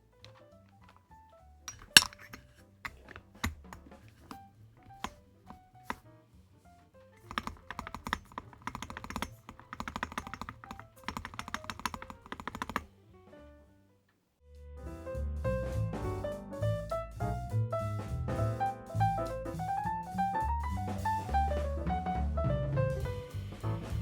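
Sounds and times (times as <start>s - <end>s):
mechanical keyboard typing: 1.7s - 5.2s, 7.3s - 12.9s.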